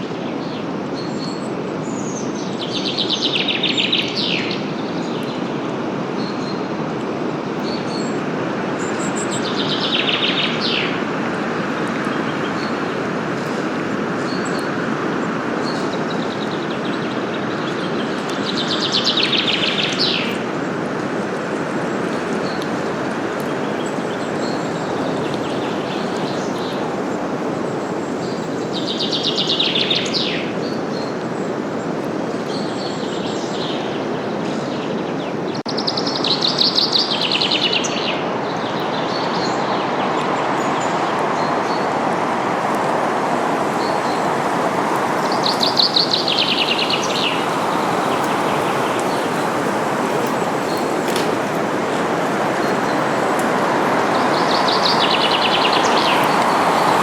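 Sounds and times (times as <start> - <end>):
wind rustling leaves: 0.0 - 57.0
songbird trilling: 44.9 - 56.6.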